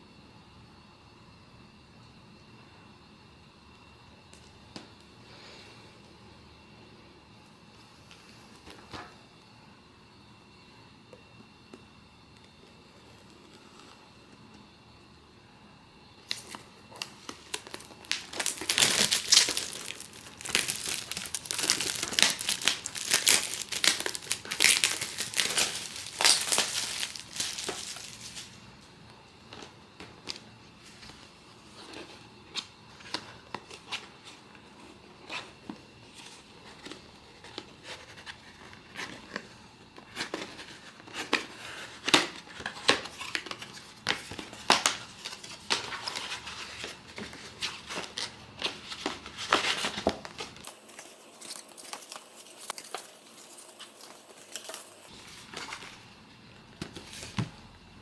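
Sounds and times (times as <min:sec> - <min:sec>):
packaging crinkling and tearing: 0:16.3 - 0:28.6, 0:42.0 - 0:56.0.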